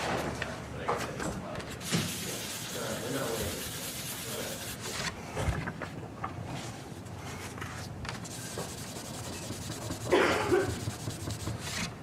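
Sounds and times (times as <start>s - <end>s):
rubbing and scraping on lacquer: 1.8s - 5.1s, 8.2s - 11.9s.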